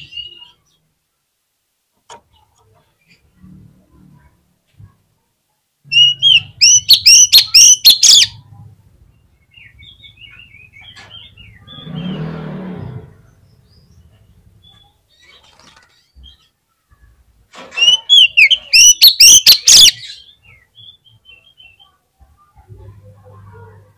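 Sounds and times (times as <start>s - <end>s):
bird singing whistled notes: 5.9s - 8.4s, 17.8s - 21.8s.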